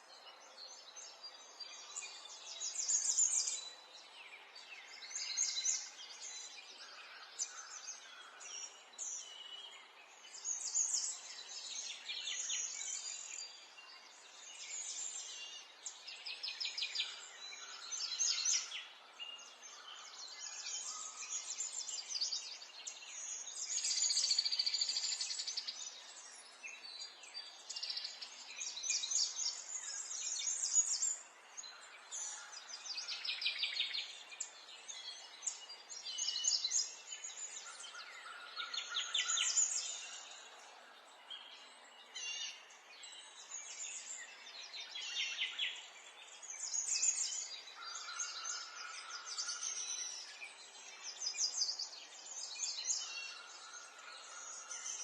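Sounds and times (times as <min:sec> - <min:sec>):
small birds chirping and trilling: 0:00.0 - 0:55.0.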